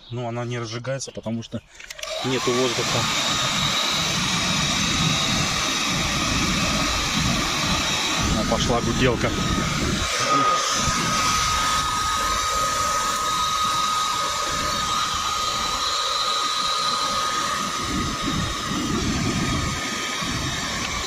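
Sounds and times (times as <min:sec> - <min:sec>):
hair dryer whining: 0:01.9 - 0:21.0.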